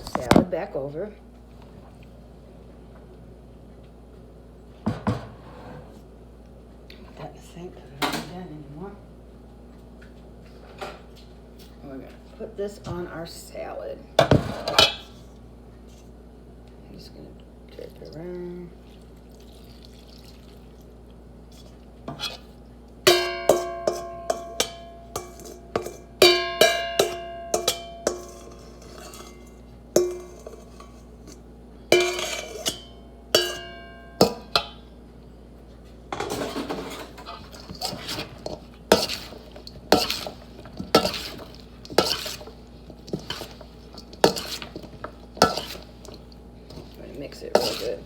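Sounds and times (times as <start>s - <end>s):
spoon scraping around bowl: 21.5s - 22.5s, 23.2s - 31.4s, 32.0s - 33.6s, 36.3s - 48.0s
utensil clinking against bowl: 23.1s - 34.8s, 36.2s - 48.0s.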